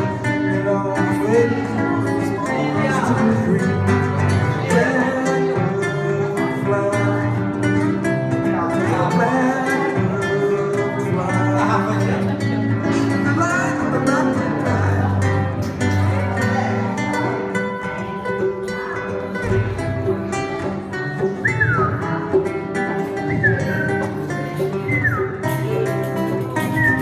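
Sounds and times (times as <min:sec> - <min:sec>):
acoustic guitar playing: 0:00.0 - 0:27.0
person singing: 0:00.0 - 0:27.0
hand drums: 0:15.4 - 0:27.0.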